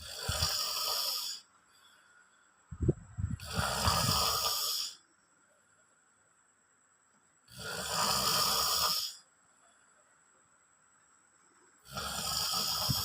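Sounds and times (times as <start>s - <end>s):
man snoring: 0.0s - 1.4s, 3.4s - 5.0s, 7.5s - 9.2s, 11.9s - 13.0s.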